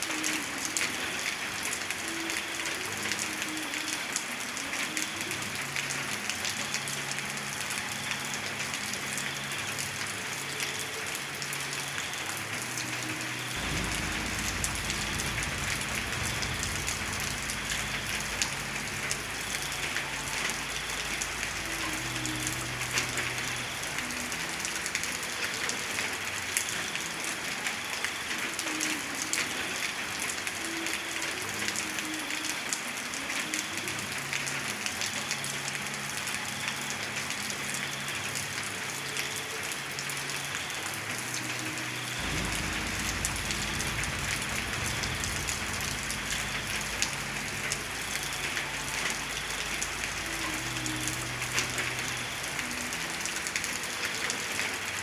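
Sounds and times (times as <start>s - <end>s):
heavy rain falling: 0.0s - 55.0s
deep low rumble: 13.6s - 19.4s, 42.2s - 48.0s.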